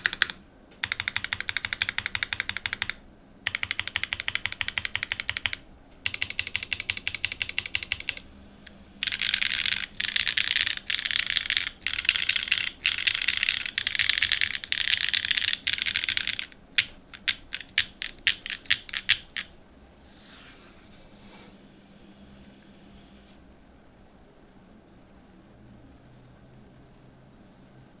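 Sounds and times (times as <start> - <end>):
mechanical keyboard typing: 0.0 - 8.2, 9.0 - 19.5.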